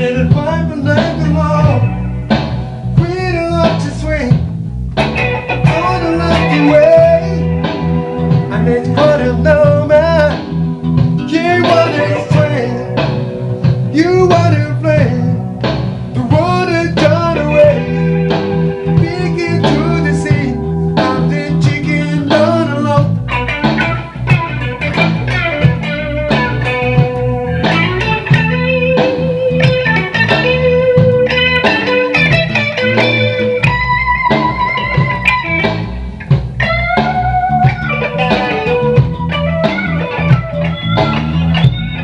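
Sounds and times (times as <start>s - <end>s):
person singing: 0.0s - 2.0s, 3.0s - 4.4s, 5.6s - 10.4s, 11.2s - 13.2s, 13.9s - 15.4s, 16.2s - 23.2s
blues guitar and bass: 0.0s - 42.0s.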